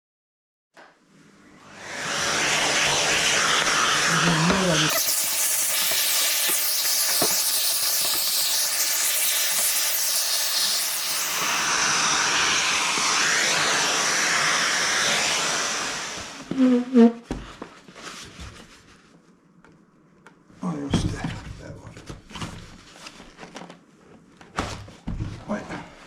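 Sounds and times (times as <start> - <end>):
dust collector running: 1.6 - 16.5.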